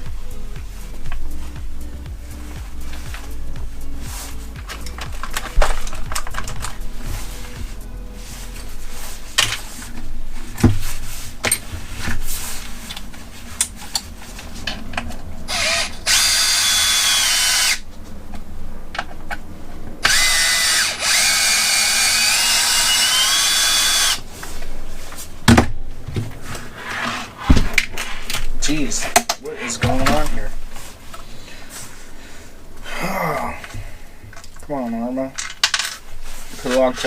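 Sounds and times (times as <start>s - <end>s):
power drill whining: 15.5s - 17.8s, 20.0s - 24.2s
tools and parts clicking: 35.4s - 36.0s.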